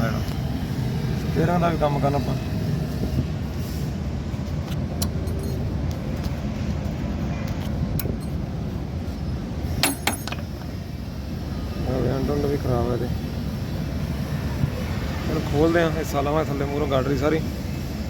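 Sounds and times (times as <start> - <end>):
metallic clicks and clinks: 5.0 - 5.7, 9.8 - 10.7.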